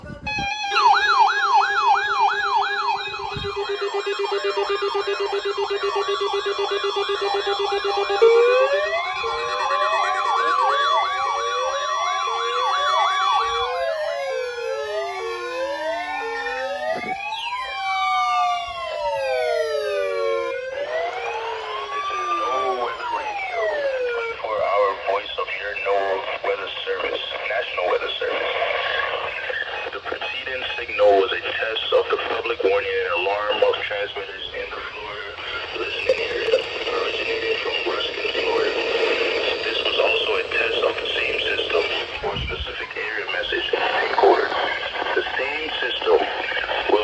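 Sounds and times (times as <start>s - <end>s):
siren wailing: 0.1s - 26.1s, 35.4s - 43.1s
siren rising whoops: 0.2s - 24.6s
low steady siren tone: 0.2s - 25.0s, 35.8s - 37.1s.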